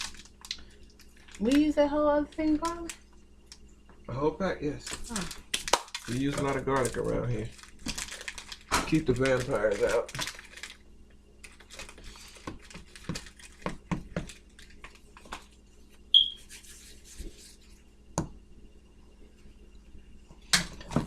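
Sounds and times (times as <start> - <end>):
short high beep: 16.1 - 16.4.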